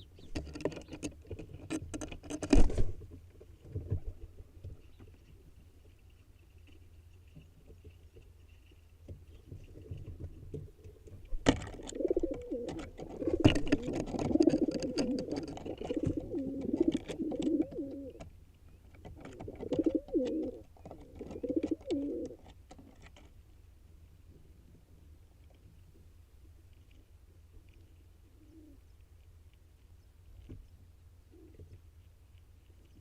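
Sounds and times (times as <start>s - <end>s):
sharp clicks and knocks: 0.2s - 5.2s, 9.0s - 23.4s
low pulsing bird cooing: 11.8s - 18.2s, 19.4s - 22.4s, 28.2s - 28.9s, 31.2s - 31.8s.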